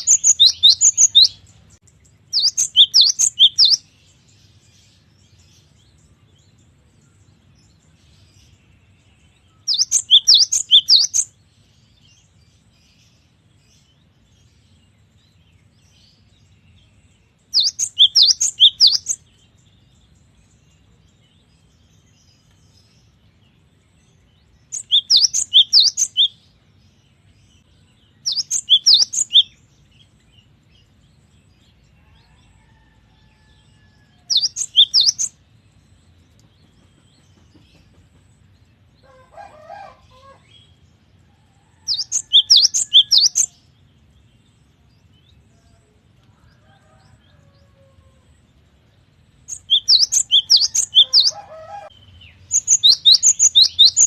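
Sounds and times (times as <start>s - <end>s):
bird singing whistled notes: 0.0s - 1.4s, 2.2s - 3.8s, 9.4s - 11.3s, 17.6s - 19.2s, 24.7s - 26.4s, 28.1s - 29.6s, 34.3s - 35.4s, 41.9s - 43.5s, 49.5s - 54.0s.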